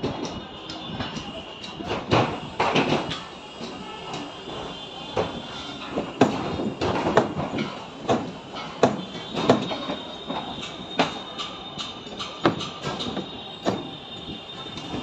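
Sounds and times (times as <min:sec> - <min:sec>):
sharp knocks: 0:06.2 - 0:09.8.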